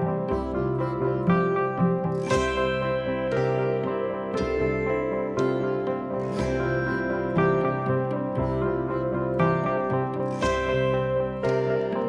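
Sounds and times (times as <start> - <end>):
plucked string notes: 0.0 - 12.0.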